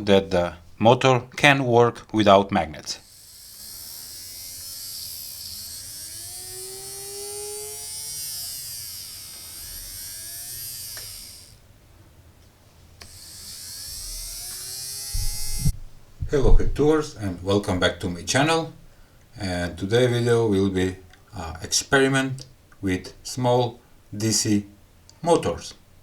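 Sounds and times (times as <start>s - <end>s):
small motor buzzing whine: 3.0s - 11.8s, 12.9s - 15.8s.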